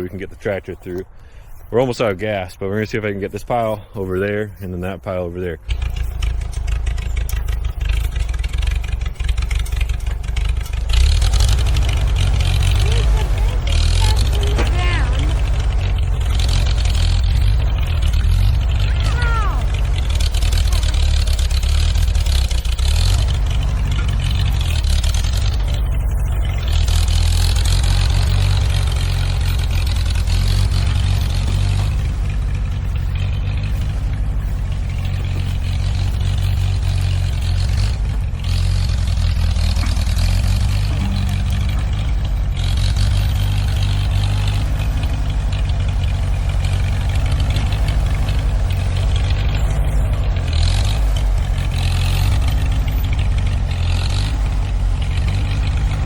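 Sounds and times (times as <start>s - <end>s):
tractor engine running: 0.0s - 56.0s.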